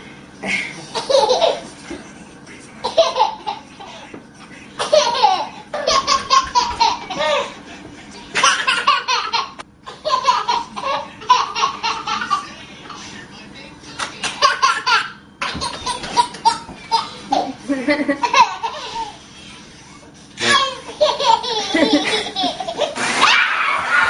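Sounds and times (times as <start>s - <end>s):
hearty laughter: 16.9s - 19.2s, 21.4s - 22.9s.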